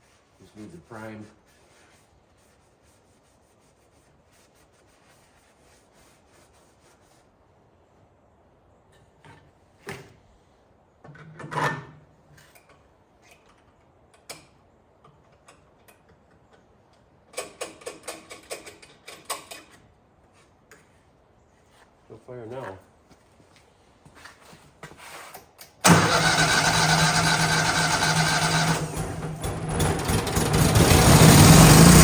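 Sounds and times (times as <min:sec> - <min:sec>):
engine cranking without firing: 0:25.8 - 0:32.0.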